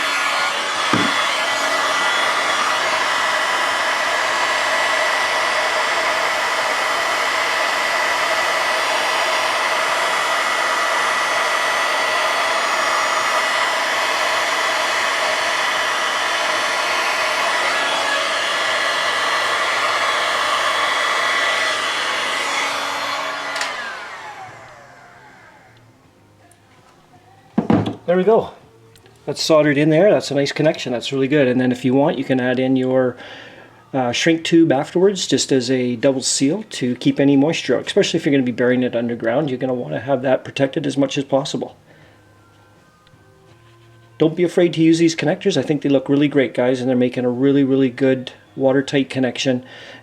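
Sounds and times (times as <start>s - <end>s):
heat gun blowing with whine: 0.0s - 25.9s
fan winding down: 0.0s - 26.6s.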